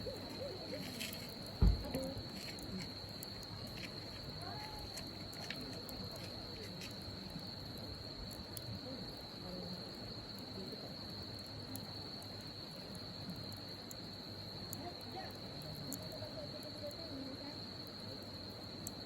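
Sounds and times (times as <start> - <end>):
campfire crackles: 0.0 - 19.0
high-pitched insect trill: 0.0 - 19.0.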